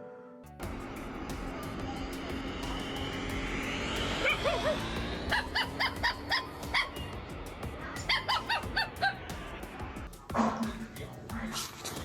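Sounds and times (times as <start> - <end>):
background music: 0.0 - 12.0
small dog yapping: 4.2 - 7.1, 8.0 - 9.2.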